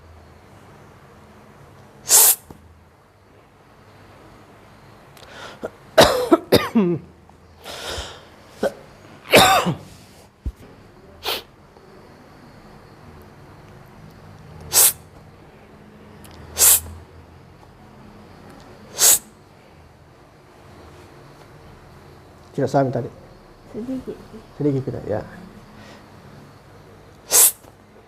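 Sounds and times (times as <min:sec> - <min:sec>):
person coughing harshly: 0:06.0 - 0:07.0, 0:08.6 - 0:09.9.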